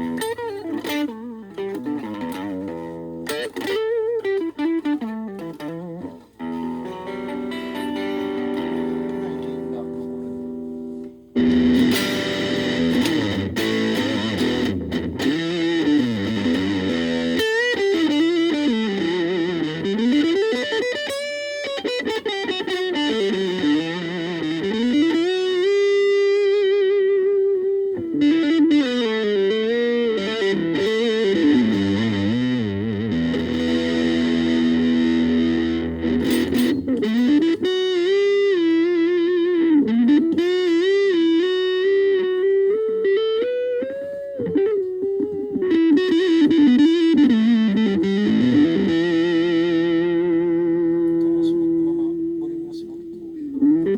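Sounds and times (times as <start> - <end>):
electric guitar lead lines: 0.0 - 53.9.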